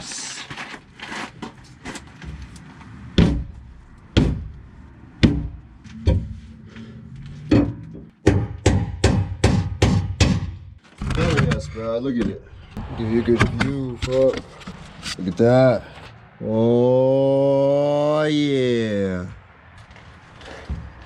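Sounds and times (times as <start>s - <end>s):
sharp knocks: 3.2s - 3.6s, 4.2s - 4.6s, 5.2s - 6.4s, 7.5s - 11.6s.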